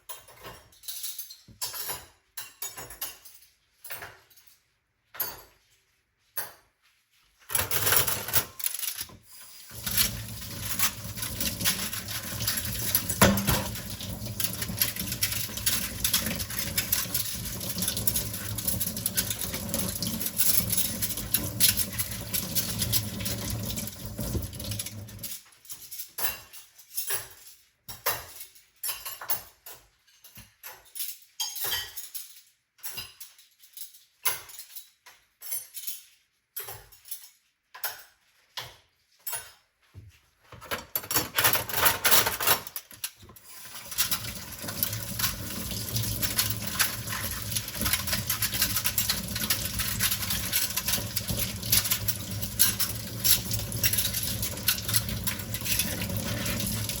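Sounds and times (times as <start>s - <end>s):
dishes clinking in a sink: 0.0s - 6.8s, 9.7s - 39.7s, 40.6s - 57.0s
tap water running into sink: 9.6s - 25.2s, 43.6s - 57.0s.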